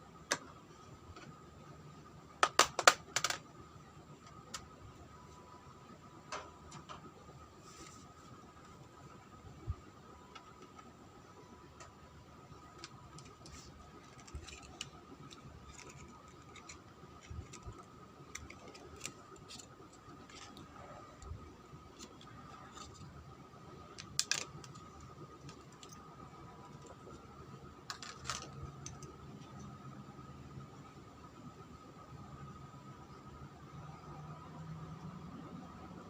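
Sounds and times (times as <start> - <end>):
faint steady high tone: 4.7 - 6.8, 8.7 - 14.6.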